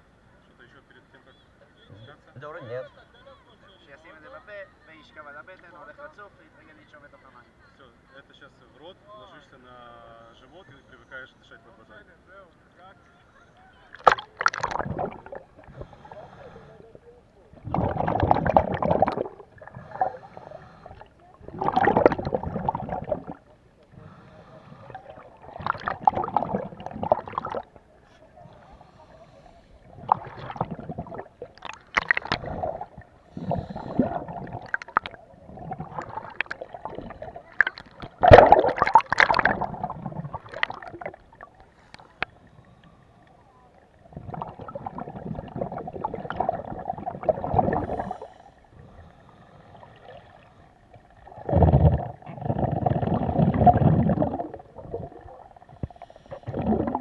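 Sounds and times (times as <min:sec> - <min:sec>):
scuba regulator bubbles gurgling: 0:14.0 - 0:42.9, 0:43.7 - 0:57.0.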